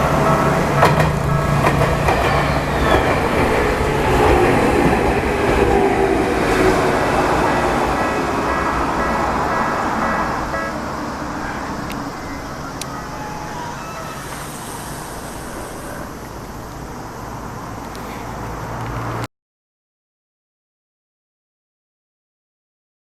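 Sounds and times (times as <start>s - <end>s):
level crossing warning bell: 0.0s - 16.9s
street traffic noise: 0.0s - 19.3s.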